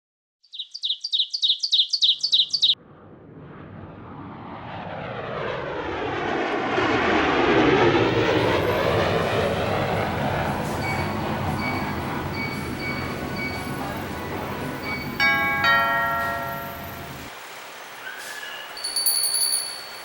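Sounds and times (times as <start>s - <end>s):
small bird chirping: 0.4s - 2.8s
vehicle rumble approaching: 2.6s - 20.0s.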